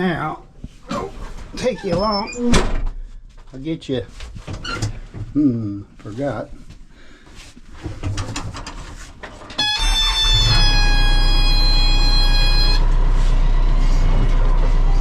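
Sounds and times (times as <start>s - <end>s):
high-pitched warning buzzer: 9.6s - 12.9s
diesel engine starting and idling: 9.6s - 15.0s.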